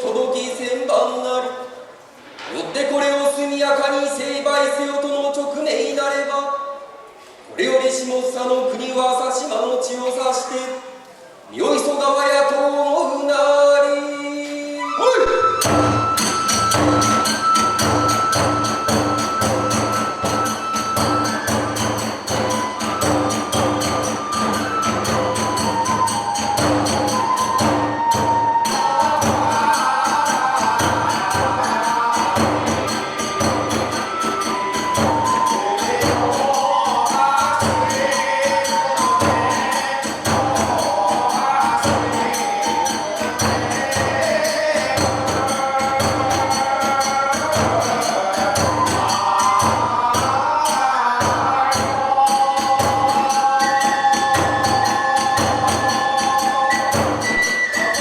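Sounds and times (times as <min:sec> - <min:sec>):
bamboo flute melody: 0:14.6 - 0:58.0
taiko drum beating: 0:15.2 - 0:50.6, 0:51.2 - 0:58.0
hand cymbals clashing: 0:15.4 - 0:58.0.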